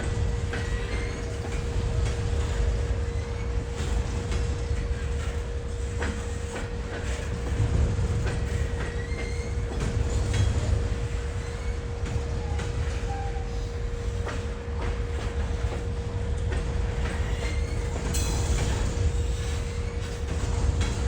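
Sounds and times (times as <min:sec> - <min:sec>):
train rumbling on rails: 0:00.0 - 0:21.0.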